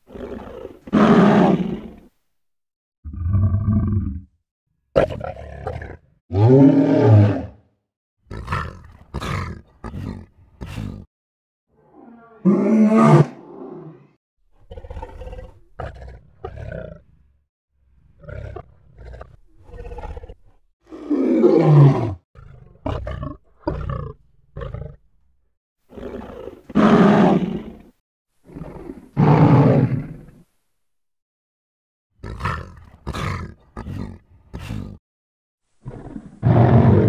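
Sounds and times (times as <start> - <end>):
lion roaring: 5.0 - 7.7, 11.8 - 17.1, 18.2 - 25.0, 35.8 - 37.0.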